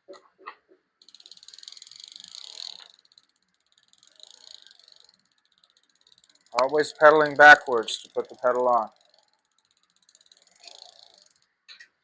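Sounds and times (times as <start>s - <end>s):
bicycle freewheel ratcheting clicks: 1.0s - 11.9s.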